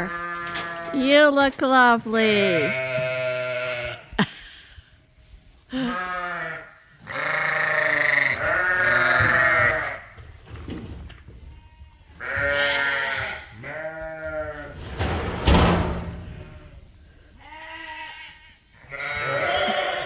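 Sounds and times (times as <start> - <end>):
sheep bleating: 5.7 - 10.0, 17.8 - 20.0
rustling thump: 14.5 - 17.1.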